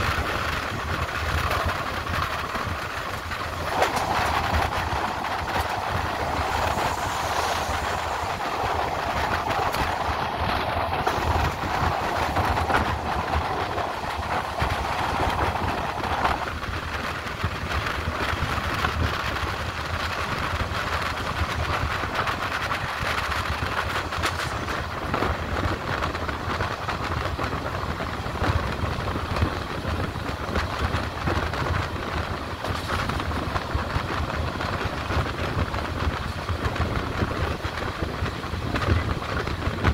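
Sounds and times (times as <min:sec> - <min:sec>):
train rumbling along track: 0:00.0 - 0:39.9
wheels clicking on track: 0:00.0 - 0:39.9
mid-pitched hum: 0:02.4 - 0:16.6.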